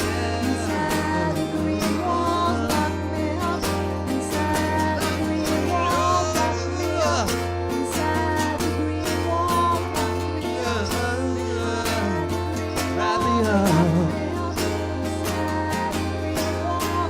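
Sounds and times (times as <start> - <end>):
guitar over a steady beat: 0.0 - 17.0
person singing: 0.0 - 17.0.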